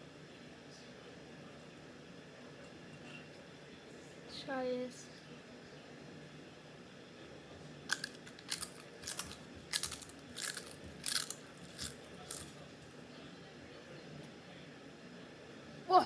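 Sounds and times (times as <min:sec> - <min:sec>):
chips being crunched and chewed: 0:07.9 - 0:12.7.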